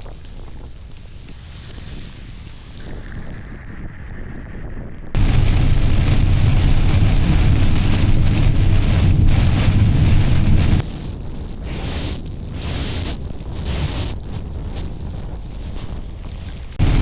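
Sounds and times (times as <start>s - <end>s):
rain: 5.2s - 10.8s, 16.8s - 17.0s
storm wind: 5.2s - 11.0s, 13.0s - 17.0s.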